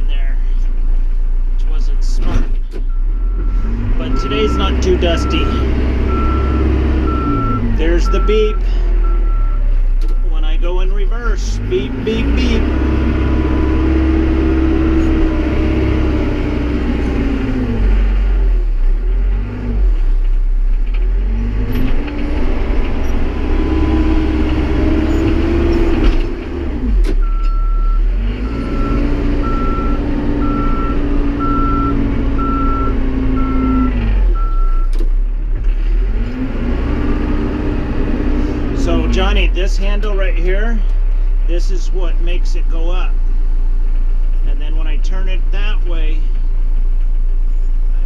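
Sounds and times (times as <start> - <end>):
backhoe engine revving: 2.0 - 48.0
reversing alarm beeping: 2.9 - 10.3, 27.2 - 34.9.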